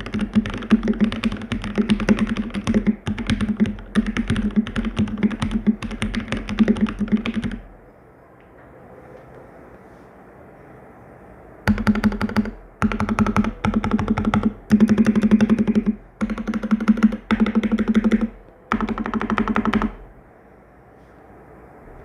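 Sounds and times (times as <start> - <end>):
fast typing on mechanical keyboard: 0.0 - 7.7, 11.7 - 20.0.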